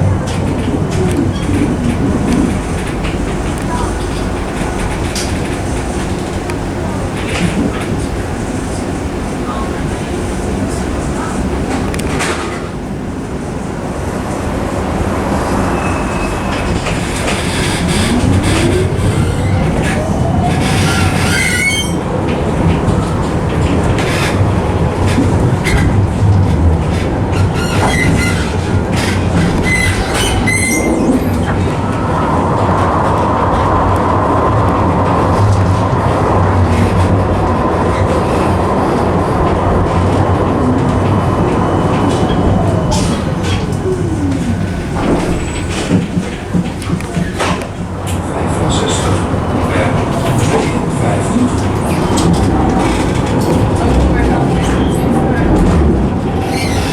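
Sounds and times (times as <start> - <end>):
rail clicks: 0.0 - 56.9
tram rumbling on rails: 0.0 - 56.9
high wheel squeal: 15.4 - 22.1, 27.4 - 32.0, 56.4 - 56.9.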